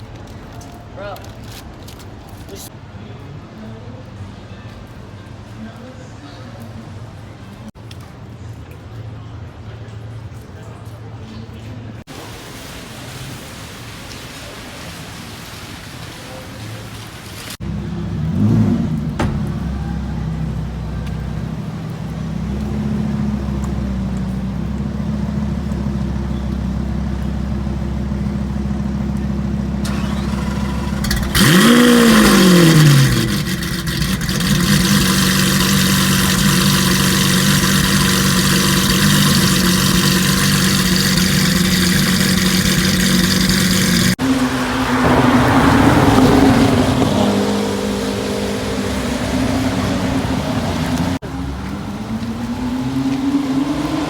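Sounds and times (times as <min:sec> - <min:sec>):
sports car engine idling and revving: 0:17.6 - 0:54.0.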